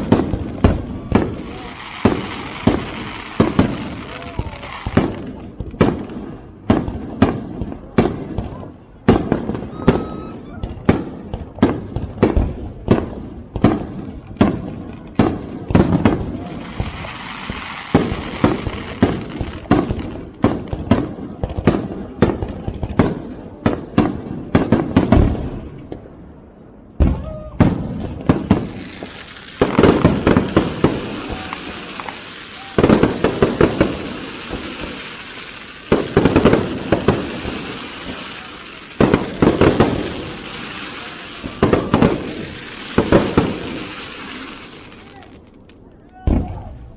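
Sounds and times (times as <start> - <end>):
fireworks crackling: 0.0 - 46.9
firework shells bursting: 27.6 - 45.7.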